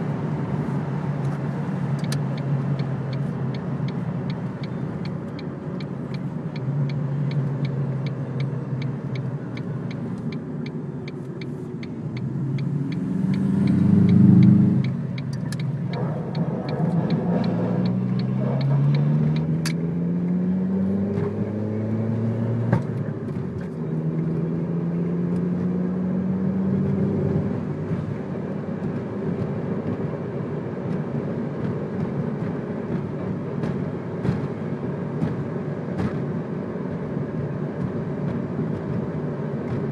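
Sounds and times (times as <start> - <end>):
car engine accelerating: 0.0 - 39.9
light ticking: 2.0 - 19.8.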